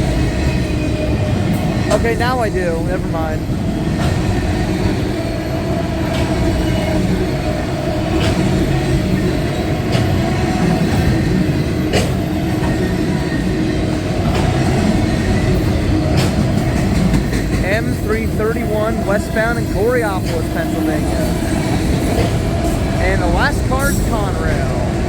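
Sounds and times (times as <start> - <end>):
freight train wheels rumbling on rail: 0.0 - 25.0
train wheels clicking: 0.0 - 25.0.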